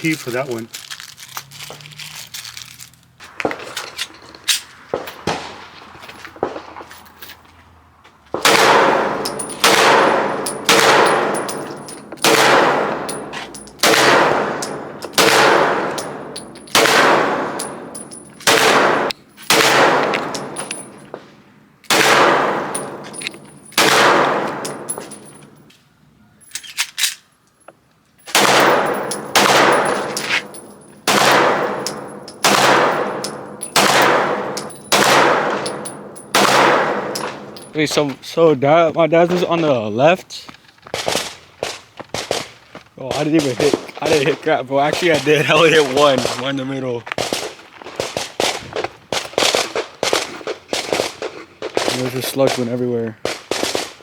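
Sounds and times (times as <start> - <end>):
gunshots with ringing echo: 4.9 - 6.9, 8.4 - 25.6, 28.3 - 37.9.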